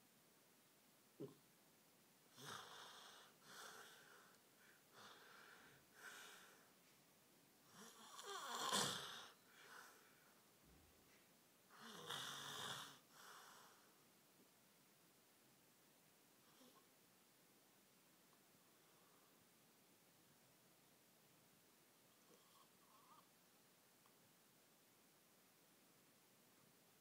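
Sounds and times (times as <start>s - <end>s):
person snoring: 7.7s - 9.4s.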